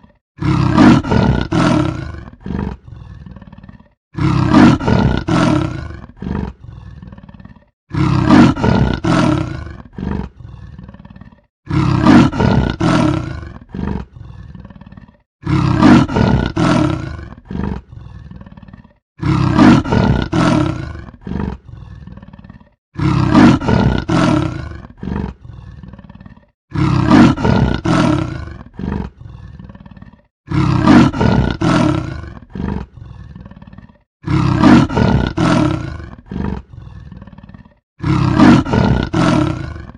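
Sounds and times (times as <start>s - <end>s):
leopard roaring: 0.0s - 39.9s.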